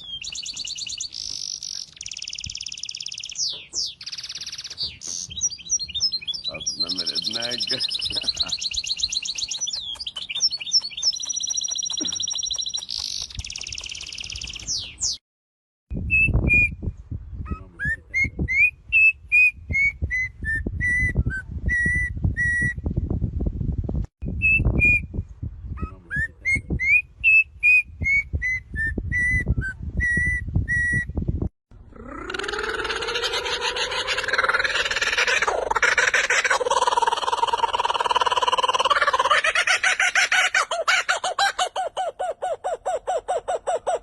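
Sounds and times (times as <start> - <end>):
bird whistling: 0.0 - 15.2.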